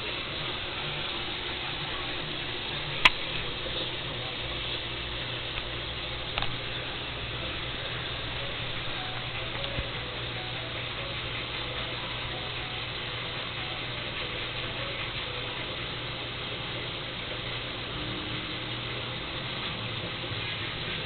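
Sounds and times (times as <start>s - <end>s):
aquarium pump humming and hissing: 0.0s - 21.0s.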